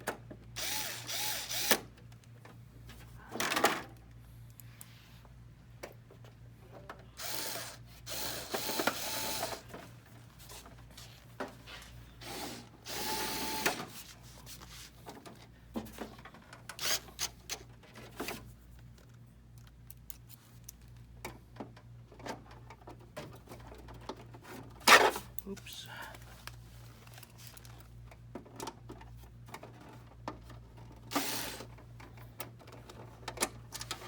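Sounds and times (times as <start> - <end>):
power screwdriver running: 0.6 - 1.8, 7.2 - 9.6, 12.2 - 13.8, 16.8 - 17.0, 31.1 - 31.7.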